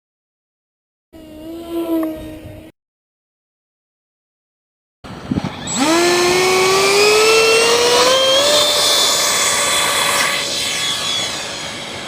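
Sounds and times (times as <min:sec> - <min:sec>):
electric ducted fan whining: 0:05.1 - 0:12.0.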